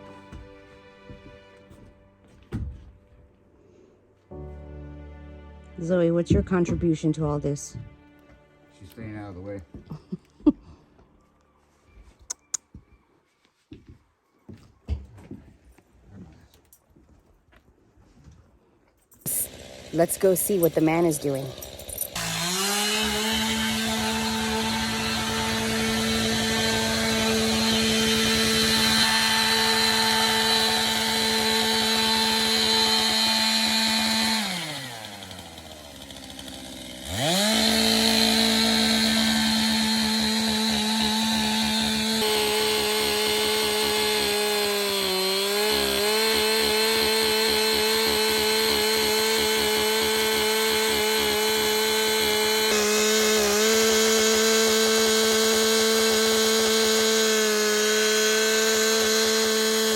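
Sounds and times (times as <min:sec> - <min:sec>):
chainsaw running: 0:19.2 - 0:59.9.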